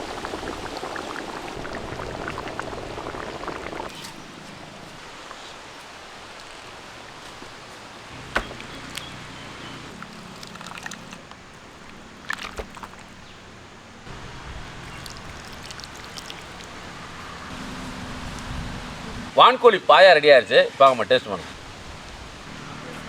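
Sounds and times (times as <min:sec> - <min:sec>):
food bubbling in a pot: 0:00.0 - 0:17.4.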